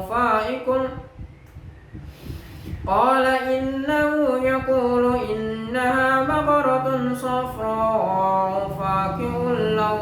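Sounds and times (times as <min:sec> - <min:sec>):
man chanting melodically: 0:02.9 - 0:10.0.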